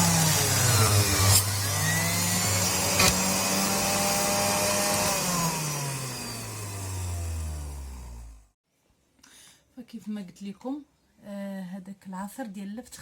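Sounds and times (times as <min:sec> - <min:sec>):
juicer motor running: 0:00.0 - 0:08.5.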